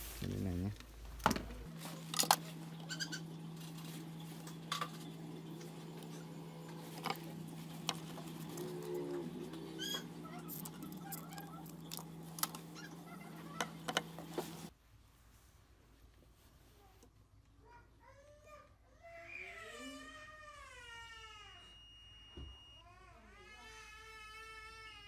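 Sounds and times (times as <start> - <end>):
steady low hum: 0.0 - 14.7.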